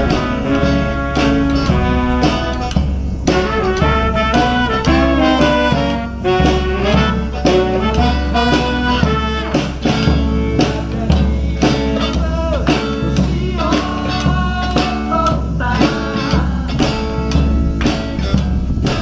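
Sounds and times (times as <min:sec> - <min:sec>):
saxophone melody: 0:00.0 - 0:10.6
live band playing swing: 0:00.0 - 0:19.0
strummed acoustic guitar: 0:00.0 - 0:19.0.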